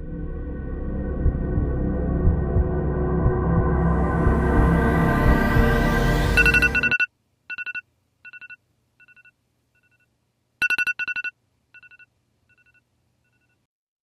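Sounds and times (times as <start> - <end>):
phone alarm beeps: 6.4 - 13.6.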